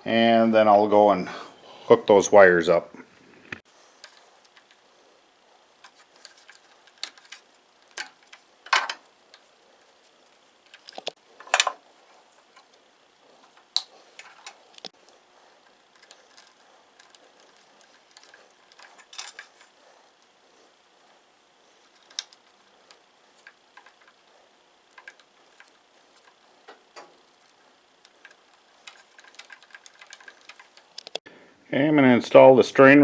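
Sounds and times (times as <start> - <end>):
small clicks and taps: 12.5 - 31.2.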